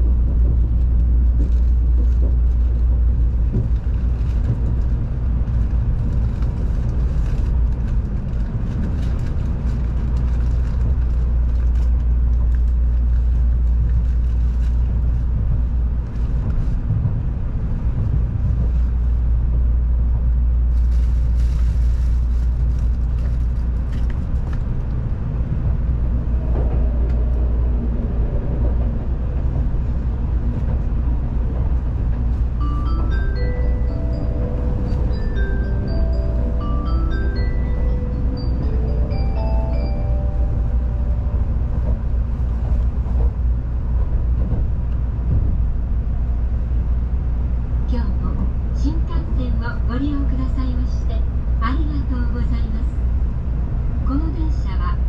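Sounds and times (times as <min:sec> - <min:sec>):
train running low rumble: 0:00.0 - 0:55.0.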